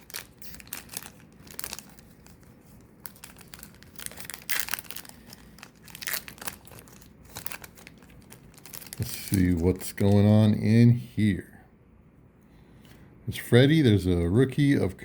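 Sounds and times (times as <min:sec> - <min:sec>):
foil wrapper crinkling and tearing: 0:00.0 - 0:10.3.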